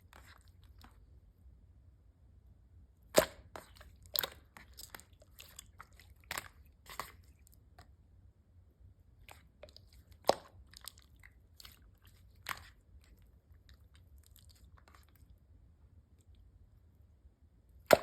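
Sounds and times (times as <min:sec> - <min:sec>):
slime squished by hand: 0:03.0 - 0:07.9, 0:09.2 - 0:15.2.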